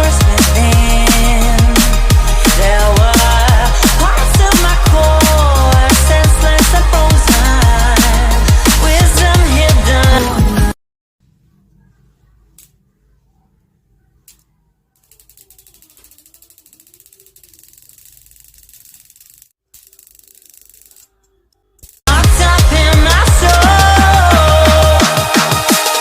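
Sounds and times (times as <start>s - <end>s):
electronic music with heavy bass: 0.0s - 10.8s, 22.1s - 26.0s
fast mechanical ticking: 15.0s - 21.1s.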